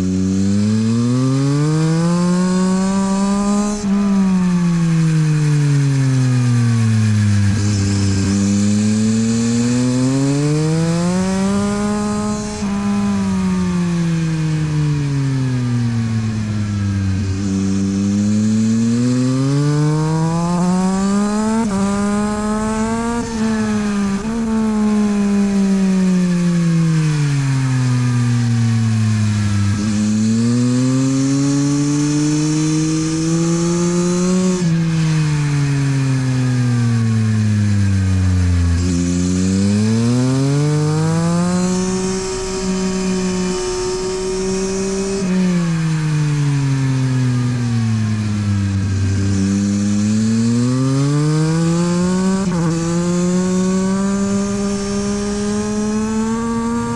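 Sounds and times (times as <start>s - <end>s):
motorcycle engine revving: 0.0s - 56.9s.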